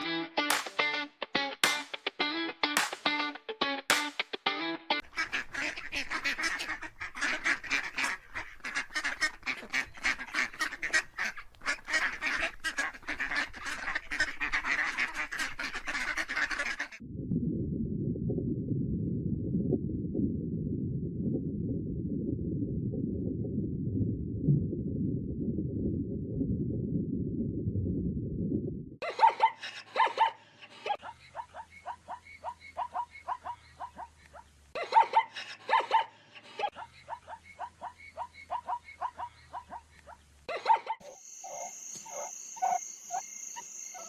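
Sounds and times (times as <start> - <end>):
waterfowl honking and quacking: 5.1 - 17.0
steady low rumble: 17.0 - 29.0.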